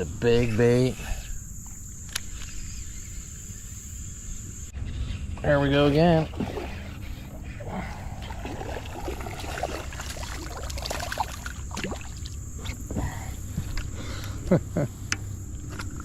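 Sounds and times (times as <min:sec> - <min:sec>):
water splashing: 0:06.1 - 0:12.8.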